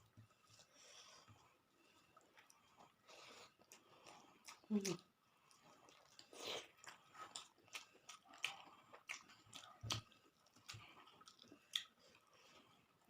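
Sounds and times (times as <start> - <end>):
wet chewing and lip smacks: 3.4 - 12.6.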